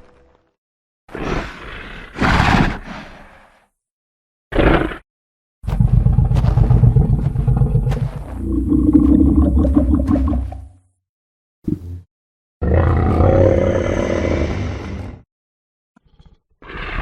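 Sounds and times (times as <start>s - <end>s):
deep rough creature growl: 5.6s - 10.8s, 12.6s - 15.2s
creature loud low roar: 12.6s - 15.2s.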